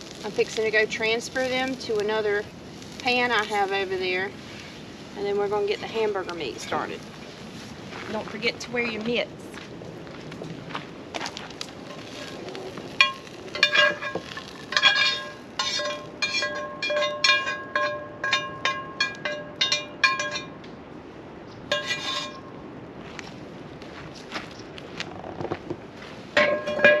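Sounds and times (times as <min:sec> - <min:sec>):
metal utensil clinking on pan: 0:13.0 - 0:20.6, 0:21.7 - 0:22.4.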